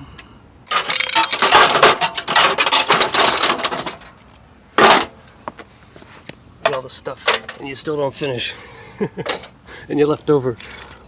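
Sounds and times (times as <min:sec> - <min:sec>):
metal tools clattering: 0:00.7 - 0:04.2, 0:04.8 - 0:05.1, 0:06.7 - 0:08.3, 0:10.6 - 0:11.0.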